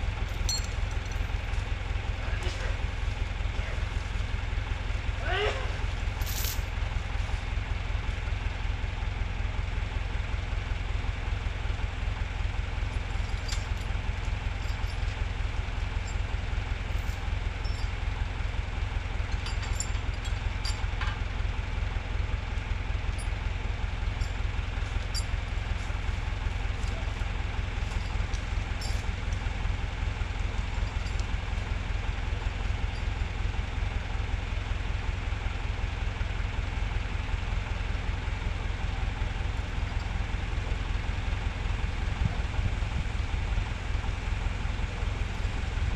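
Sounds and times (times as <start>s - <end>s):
tractor engine running at low revs: 0.0s - 45.9s
light clicks and ticks: 30.9s - 31.3s.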